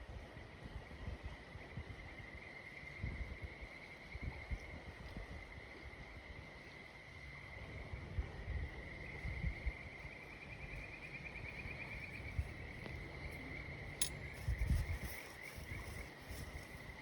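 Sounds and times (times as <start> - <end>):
insect trilling: 10.7 - 17.0.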